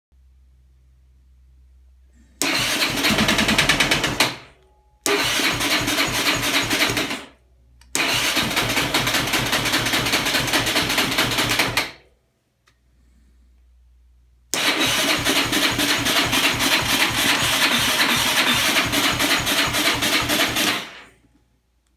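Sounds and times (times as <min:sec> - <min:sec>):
engine cranking on starter: 0:02.4 - 0:12.0, 0:14.5 - 0:21.1.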